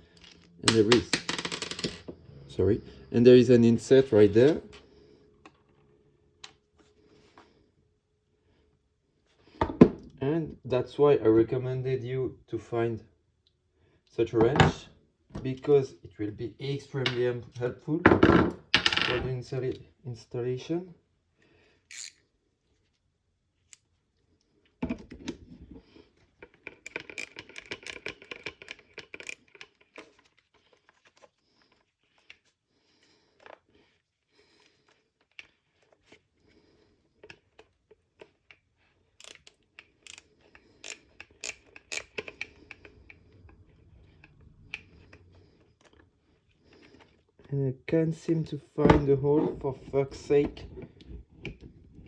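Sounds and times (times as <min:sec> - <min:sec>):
screw and wrench clicking: 0:21.9 - 0:22.2, 0:26.7 - 0:30.1, 0:39.2 - 0:42.9.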